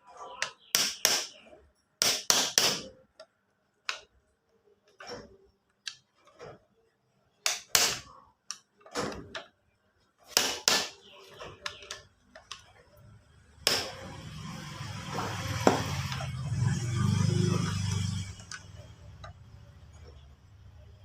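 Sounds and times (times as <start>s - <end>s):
sharp metallic clicks and knocks: 0.4s - 4.2s, 7.4s - 9.6s, 13.6s - 20.3s
starter motor humming: 12.6s - 21.0s.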